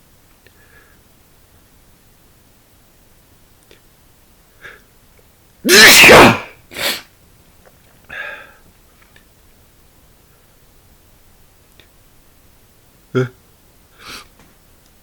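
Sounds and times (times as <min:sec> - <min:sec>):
man sneezing: 0:05.7 - 0:07.1.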